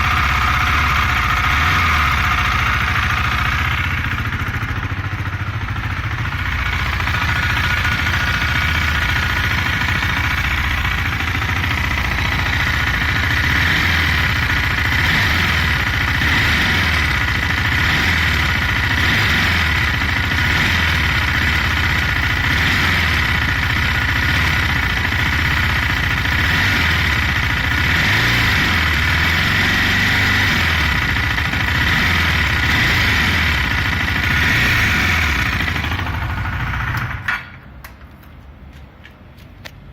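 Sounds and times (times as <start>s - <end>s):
metallic engine ticking: 0.0s - 16.4s
motorcycle engine running: 0.0s - 37.6s.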